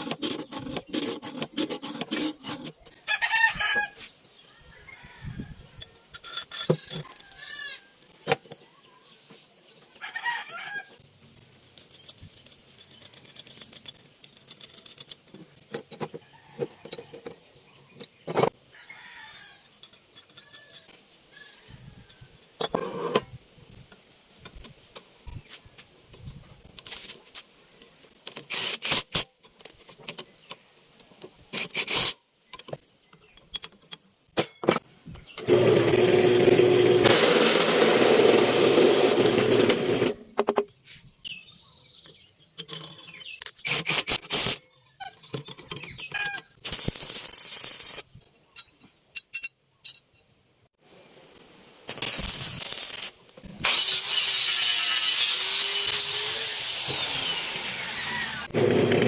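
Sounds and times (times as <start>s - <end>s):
metal parts knocking and scraping: 0.0s - 3.0s, 5.7s - 8.7s, 11.6s - 18.6s, 19.8s - 21.0s, 31.5s - 36.5s, 42.0s - 50.3s
power tool running: 35.4s - 40.2s, 53.6s - 59.0s.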